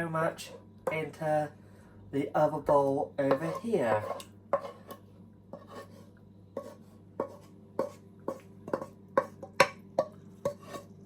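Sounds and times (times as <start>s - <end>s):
utensil knocking and scraping wok: 2.7s - 11.0s.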